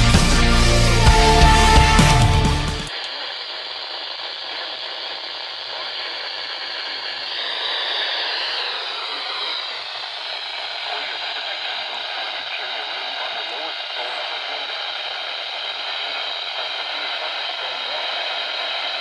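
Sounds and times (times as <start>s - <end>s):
music: 0.0s - 2.9s
radio static hiss: 0.0s - 19.0s.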